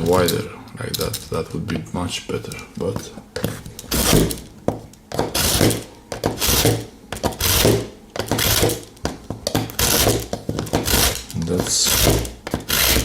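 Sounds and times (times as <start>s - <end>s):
knife blade rasping through sharpener: 5.3s - 5.8s, 9.8s - 10.2s, 10.8s - 13.0s.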